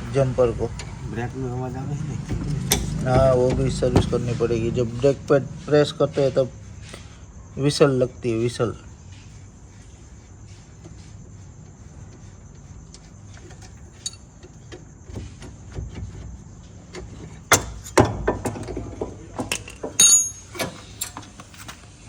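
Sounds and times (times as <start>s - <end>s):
metal tools clanking on metal: 0.0s - 6.5s, 13.2s - 15.5s, 16.8s - 21.4s
ringing metallic clang: 19.9s - 20.8s.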